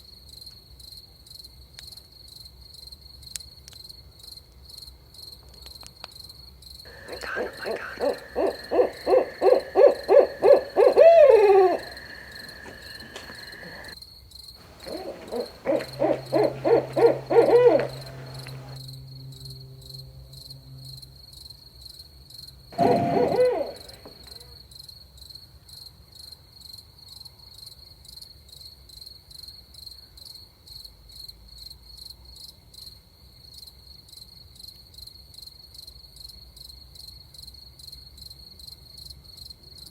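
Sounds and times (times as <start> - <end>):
crickets chirring: 6.8 - 20.0, 22.8 - 24.4
owl hooting: 6.9 - 14.0, 14.6 - 18.8, 22.8 - 24.5.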